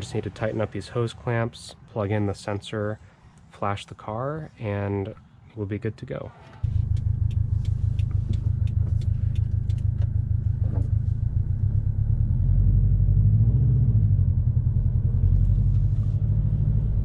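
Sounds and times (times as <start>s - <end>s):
car engine drone from inside cabin: 6.2s - 17.0s
light ticking: 6.9s - 10.2s.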